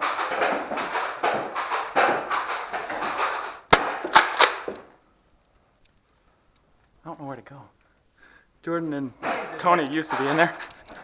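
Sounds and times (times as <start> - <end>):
toy blaster clattering fire: 0.0 - 4.9
sharp cracks: 0.0 - 5.0.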